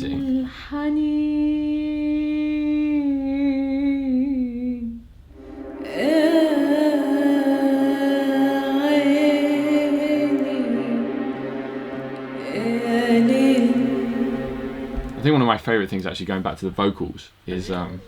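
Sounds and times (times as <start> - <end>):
faint low repeating pulse: 5.2 - 15.8.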